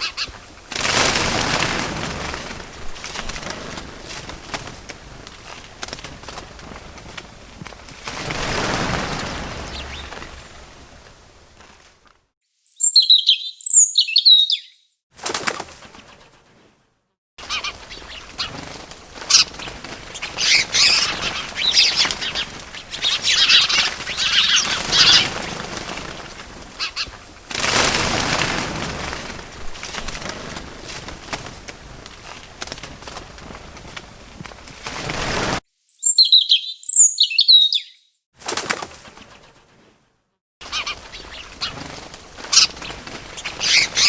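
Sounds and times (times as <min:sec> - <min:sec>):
wings flapping: 0:00.0 - 0:12.2, 0:15.1 - 0:16.8, 0:17.4 - 0:35.6, 0:38.4 - 0:44.0
birds chirping: 0:08.2 - 0:11.0, 0:12.6 - 0:14.9, 0:17.4 - 0:26.1, 0:35.7 - 0:38.2, 0:40.6 - 0:44.0.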